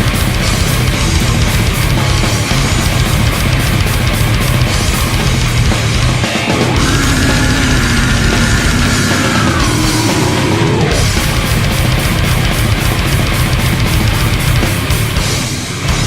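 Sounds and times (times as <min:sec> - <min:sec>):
death metal band playing: 0:00.0 - 0:16.0
long sliding high tone: 0:06.6 - 0:11.2.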